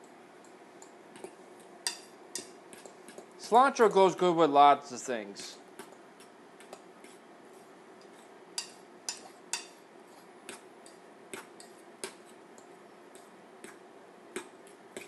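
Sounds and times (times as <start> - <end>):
fork clinking against bowl: 1.8 - 2.9, 8.6 - 9.8.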